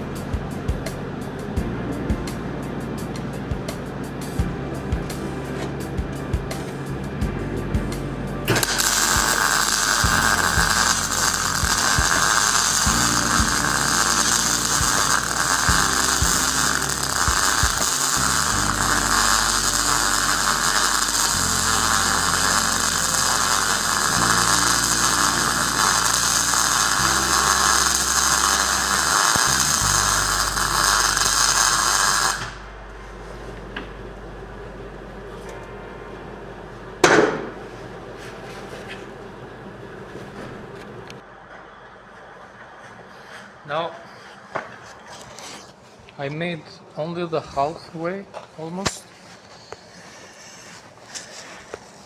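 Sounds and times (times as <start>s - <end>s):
welding arc crackling: 8.5s - 32.8s.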